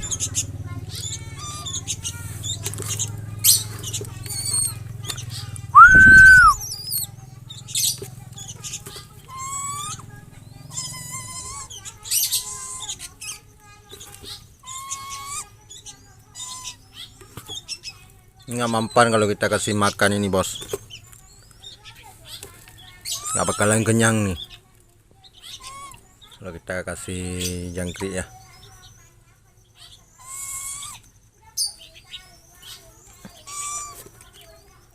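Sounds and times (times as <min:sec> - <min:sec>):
birds chirping and whistling: 0:00.0 - 0:21.8, 0:23.0 - 0:24.5, 0:25.3 - 0:26.3, 0:29.6 - 0:34.9
loud drawn-out bird call: 0:05.8 - 0:06.9.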